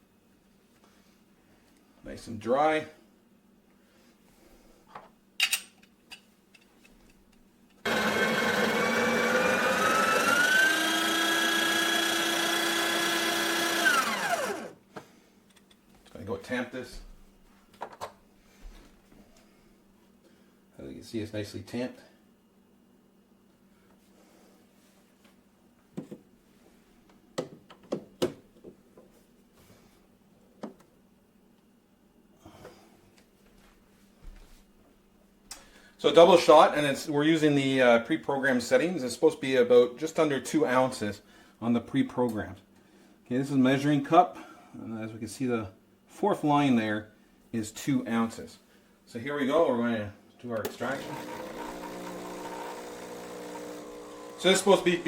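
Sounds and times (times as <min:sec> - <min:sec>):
coffee grinder whining: 0:07.8 - 0:14.8, 0:50.6 - 0:55.0.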